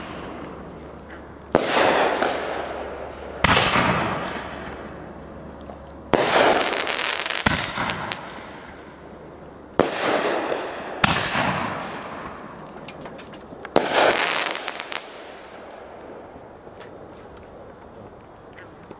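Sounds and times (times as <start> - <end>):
fireworks bangs: 0.0 - 5.1, 6.1 - 8.7, 9.8 - 16.4
fireworks crackling pops: 0.0 - 8.9, 9.7 - 18.9.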